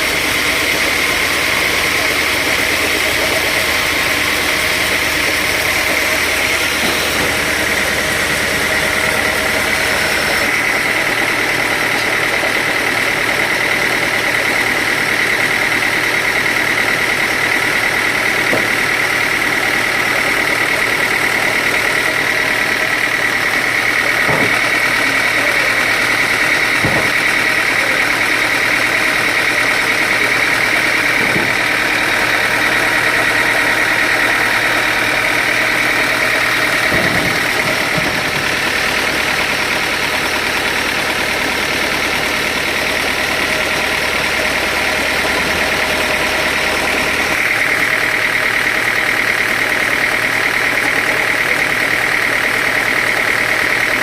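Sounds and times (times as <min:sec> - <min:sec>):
sawmill machinery whining: 0:00.0 - 0:54.0
sharp knocks: 0:18.4 - 0:19.0, 0:24.2 - 0:25.0, 0:26.7 - 0:27.6, 0:36.1 - 0:38.7.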